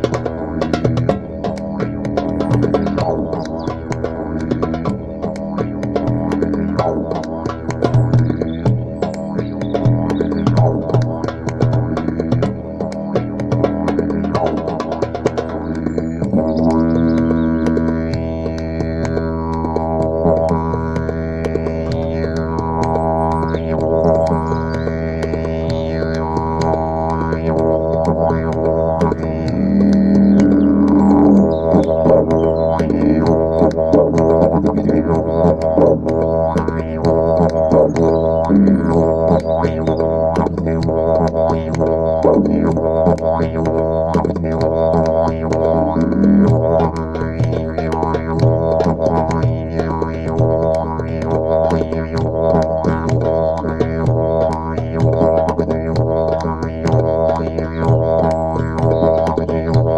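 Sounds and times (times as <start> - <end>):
rhythmic low pulse: 0.0 - 59.9
low droning music: 12.2 - 44.0.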